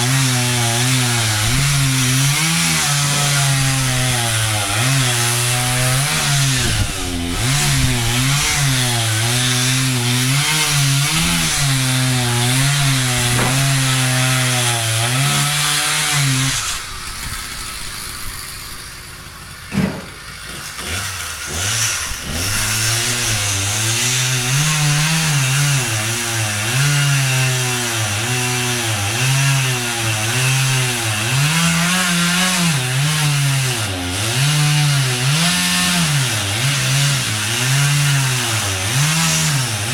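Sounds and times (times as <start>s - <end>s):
chainsaw cutting wood: 0.0s - 39.9s
sharp knock: 13.2s - 14.0s, 19.7s - 20.2s.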